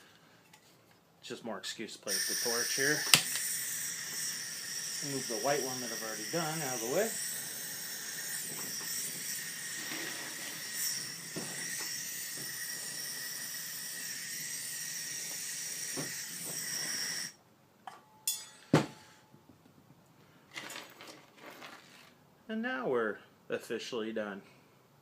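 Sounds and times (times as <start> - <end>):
gas torch hissing: 2.1 - 17.4.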